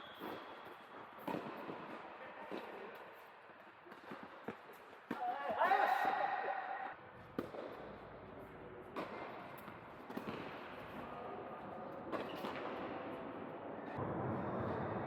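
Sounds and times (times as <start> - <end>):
tennis ball struck by rackets: 1.2 - 2.0, 7.4 - 7.9, 9.0 - 11.0, 12.1 - 13.0
low rumble: 14.0 - 15.0.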